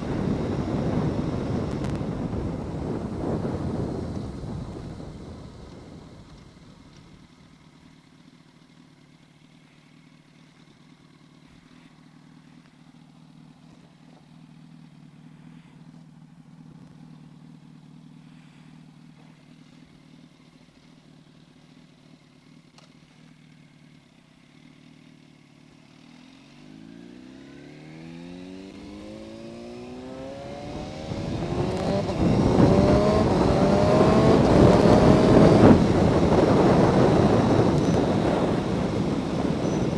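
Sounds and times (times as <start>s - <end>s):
wind rushing over microphone: 0.0s - 6.6s, 30.3s - 39.9s
motorcycle engine revving: 0.0s - 39.9s.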